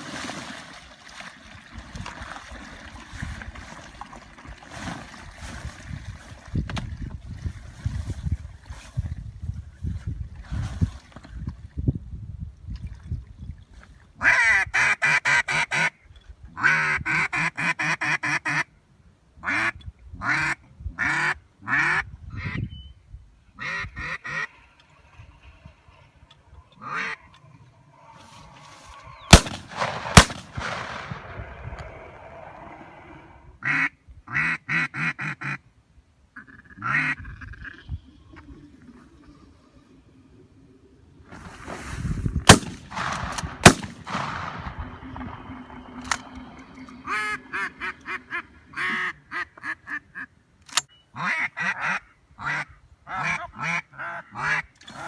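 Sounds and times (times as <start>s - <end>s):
duck call quacking: 14.2s - 15.9s, 33.6s - 35.6s, 47.0s - 50.3s, 51.2s - 54.7s
gunshots: 29.3s - 31.9s, 42.5s - 45.5s.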